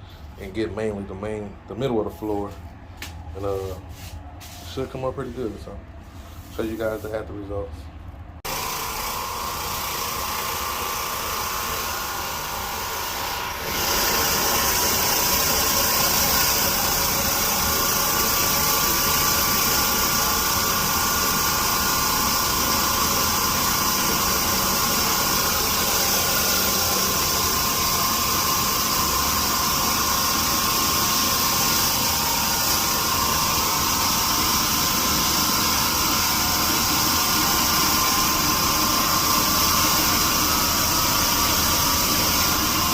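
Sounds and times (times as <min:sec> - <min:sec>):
floor scrubbing machine running: 0:08.5 - 0:42.9.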